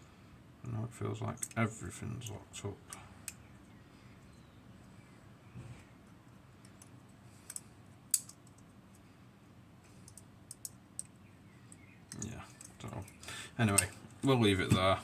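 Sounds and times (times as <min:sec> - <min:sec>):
metallic clicks of lock picking: 0:06.6 - 0:08.7, 0:10.0 - 0:13.2.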